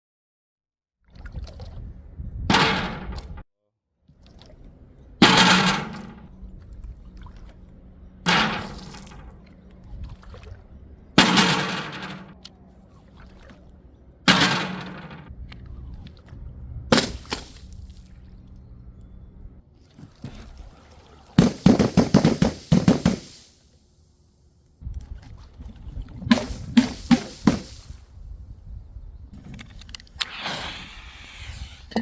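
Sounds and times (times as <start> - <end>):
liquid splashing: 4.1 - 18.8, 19.8 - 23.7.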